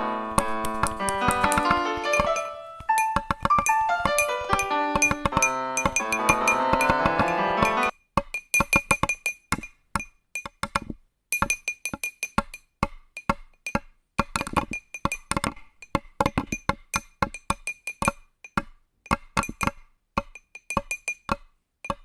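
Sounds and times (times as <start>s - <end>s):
mallet instrument melody: 0.0s - 7.9s
wood-block-like percussive clicks: 0.4s - 22.0s.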